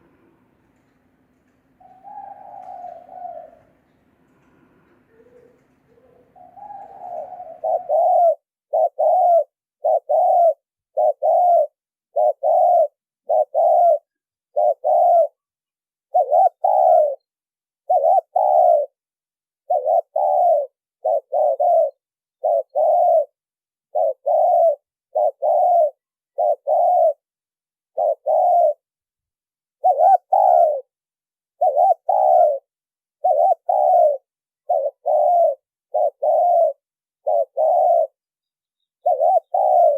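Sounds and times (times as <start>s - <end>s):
dove cooing: 0.0s - 15.5s, 16.1s - 17.2s, 17.8s - 19.0s, 19.6s - 27.2s, 27.9s - 28.8s, 29.8s - 30.9s, 31.6s - 39.9s.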